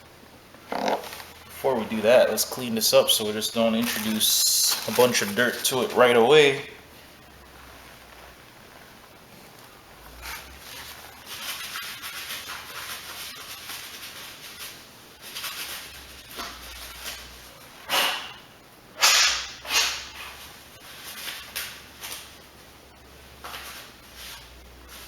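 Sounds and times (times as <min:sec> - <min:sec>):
scrubbing noises: 0:00.7 - 0:06.6.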